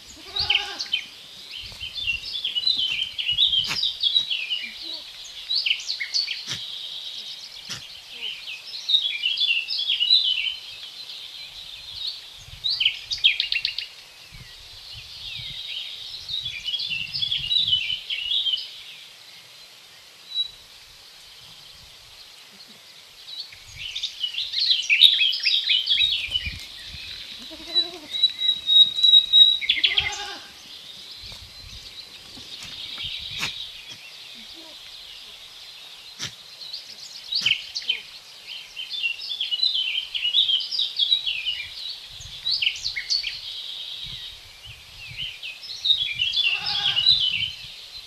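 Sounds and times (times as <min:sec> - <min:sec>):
songbirds chirping and trilling: 0:00.0 - 0:48.0
goats bleating: 0:00.1 - 0:01.0, 0:27.4 - 0:28.2, 0:29.8 - 0:30.6, 0:46.5 - 0:47.1.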